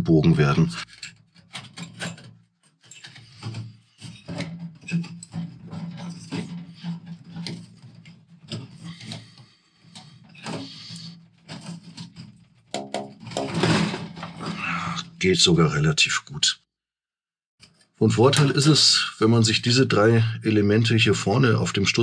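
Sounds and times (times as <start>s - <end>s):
metal pipe crinkling and scraping: 0.7s - 15.0s.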